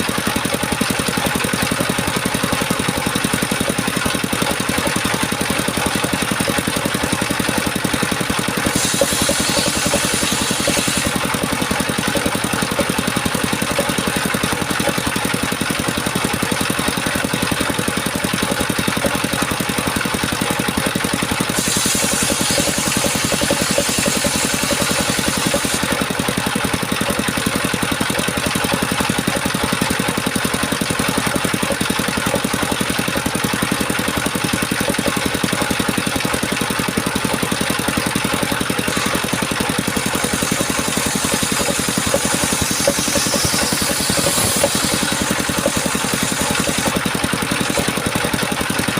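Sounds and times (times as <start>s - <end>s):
sawmill engine running: 0.0s - 48.9s.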